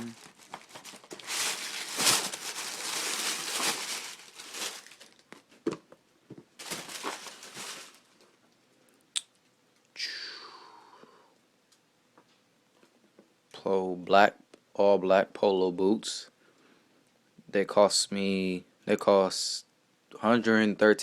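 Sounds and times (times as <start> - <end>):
packing paper crinkling: 0.0 - 5.6, 6.6 - 8.4.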